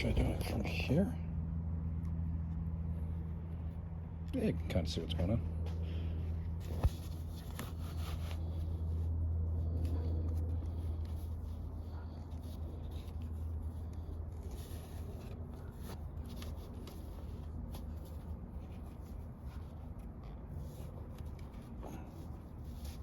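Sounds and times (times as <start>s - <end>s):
steady low hum: 0.0s - 23.0s
fabric rubbing and rustling: 6.2s - 23.0s.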